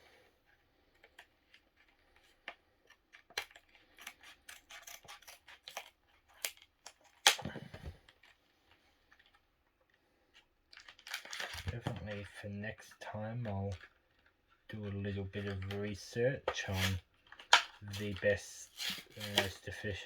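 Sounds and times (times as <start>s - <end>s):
scissors snipping packaging: 0.9s - 8.4s, 10.8s - 11.9s, 16.5s - 19.9s.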